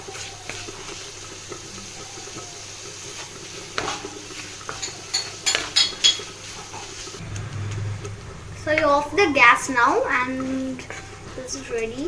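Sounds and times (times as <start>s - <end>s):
mixture sizzling in a pan: 0.0s - 12.0s
spoon scraping and knocking pan: 3.8s - 7.0s.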